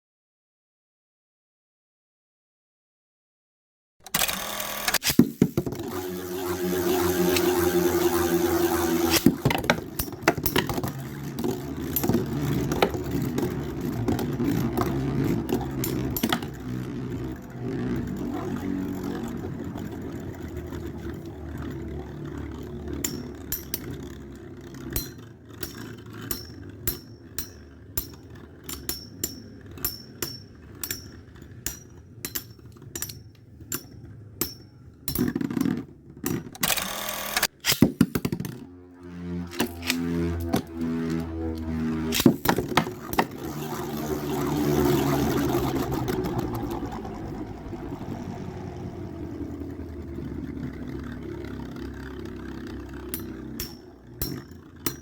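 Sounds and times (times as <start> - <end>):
spinning tops whirring and scraping: 4.1 - 55.0
spinning tops clacking together: 6.7 - 20.7.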